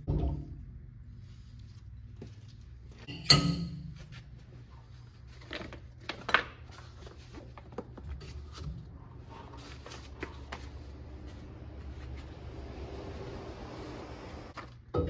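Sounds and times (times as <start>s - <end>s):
metal clank ringing: 3.1s - 4.0s.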